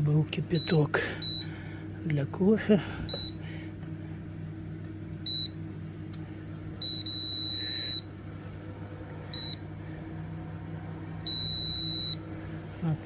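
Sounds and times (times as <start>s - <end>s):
low appliance hum: 0.0s - 13.0s
cooktop electronic beeps: 6.8s - 9.7s, 11.3s - 12.3s.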